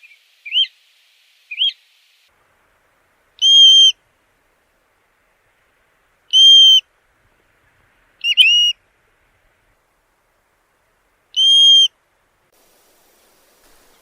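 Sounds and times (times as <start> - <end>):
plover whistled calls: 0.0 - 0.7, 1.5 - 1.8, 3.4 - 4.0, 6.3 - 6.9, 8.2 - 8.8, 11.3 - 11.9.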